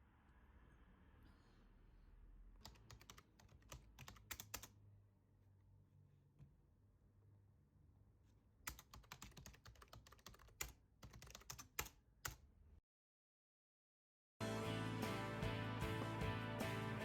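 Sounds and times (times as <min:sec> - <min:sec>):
typing on computer keyboard: 0:02.6 - 0:04.8, 0:08.7 - 0:12.4.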